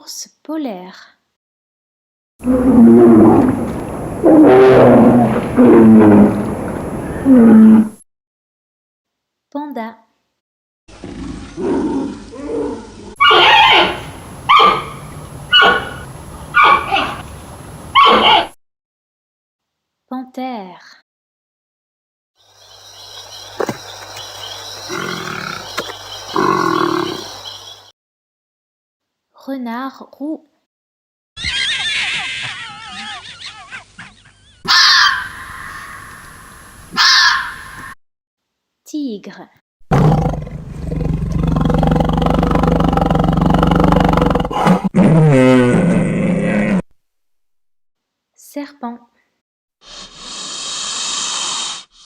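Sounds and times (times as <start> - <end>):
fox screaming: 12.4 - 17.2, 17.9 - 18.6, 26.4 - 27.3, 31.4 - 38.0
fox yelping: 13.2 - 17.2, 17.9 - 18.6, 31.4 - 36.2, 36.9 - 38.0.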